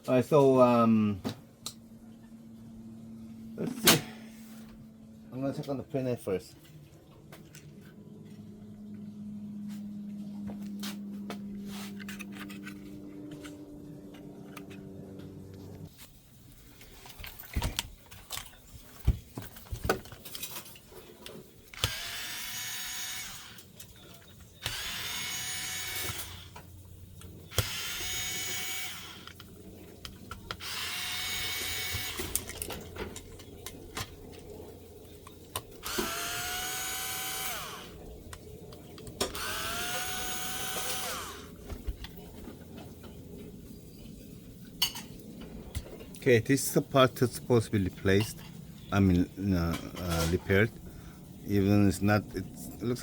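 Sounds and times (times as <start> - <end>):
low steady hum: 0.0 - 53.0
parts being handled clicking: 11.5 - 15.6, 21.6 - 34.6
cordless drill whirring: 21.7 - 23.8, 24.6 - 26.7, 27.4 - 29.5, 30.5 - 32.5, 35.8 - 38.0, 39.3 - 41.6.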